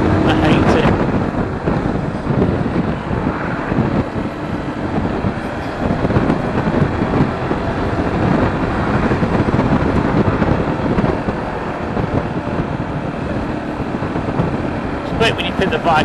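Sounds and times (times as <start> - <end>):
motorcycle engine running: 0.0 - 16.0
wind noise on microphone: 0.0 - 16.0.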